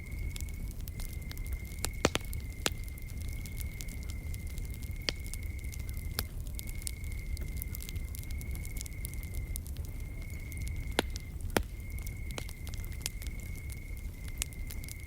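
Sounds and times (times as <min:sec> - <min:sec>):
campfire crackling and popping: 0:00.0 - 0:15.0.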